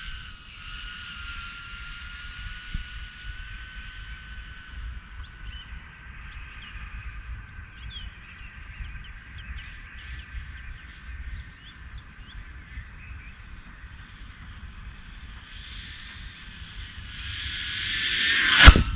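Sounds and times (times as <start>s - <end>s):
distant quadcopter motors whining: 0.0s - 8.0s
low rumble: 14.0s - 18.9s.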